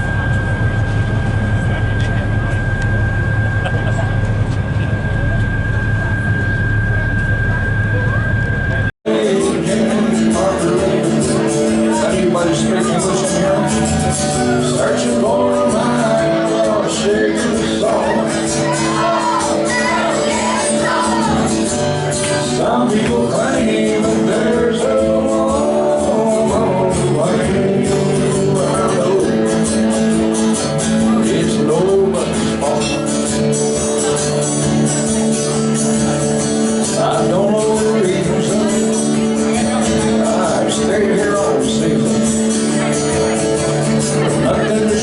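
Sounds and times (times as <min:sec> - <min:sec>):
person singing: 0:09.1 - 0:34.4, 0:36.8 - 0:45.0
music with held notes: 0:09.1 - 0:45.0.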